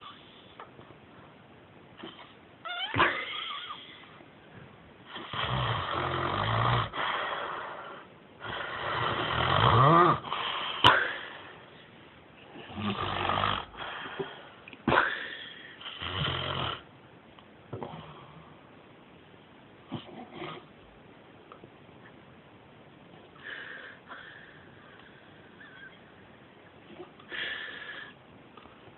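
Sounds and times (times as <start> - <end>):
sharp snorts: 5.1 - 11.4
man snoring loudly: 5.2 - 7.0, 8.5 - 10.4, 12.7 - 13.8.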